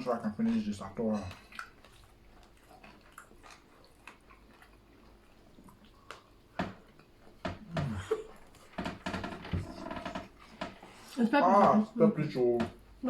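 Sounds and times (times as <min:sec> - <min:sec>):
people chewing food: 0:00.0 - 0:13.0.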